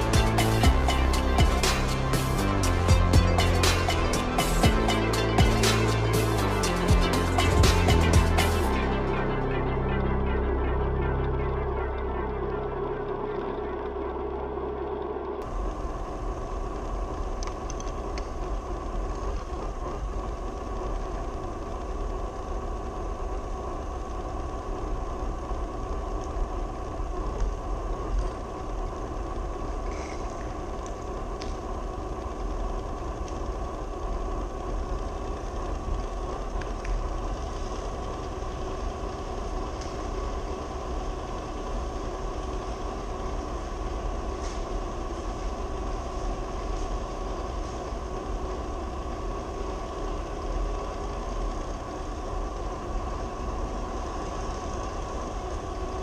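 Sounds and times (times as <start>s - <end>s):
rc truck motor whine: 11.9s - 56.0s.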